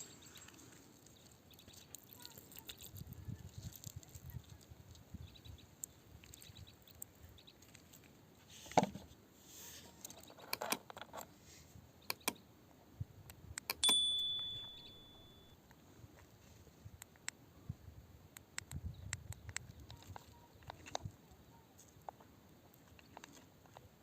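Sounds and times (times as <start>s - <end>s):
high metallic ring: 13.8s - 15.6s.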